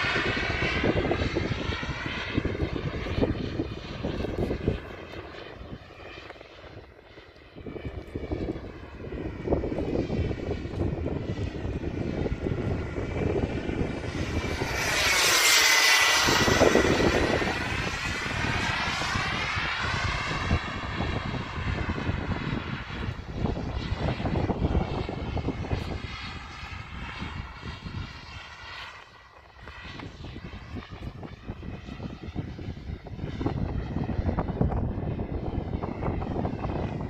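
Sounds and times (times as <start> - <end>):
model jet turbine whine: 0.0 - 37.0.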